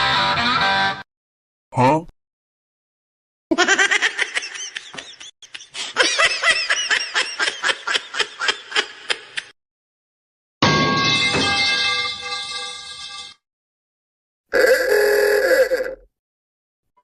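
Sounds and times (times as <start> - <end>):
high-pitched snickering laugh: 3.5 - 9.5.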